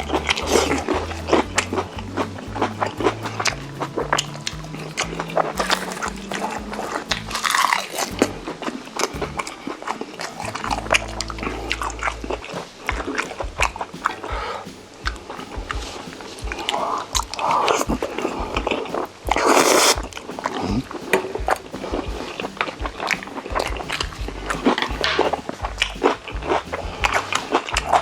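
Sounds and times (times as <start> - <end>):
biting and chewing food: 0.0 - 15.3
wet mouth clicks: 16.7 - 20.9.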